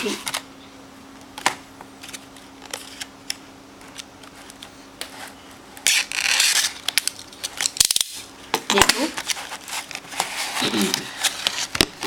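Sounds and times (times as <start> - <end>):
tape ripping: 5.8 - 11.9.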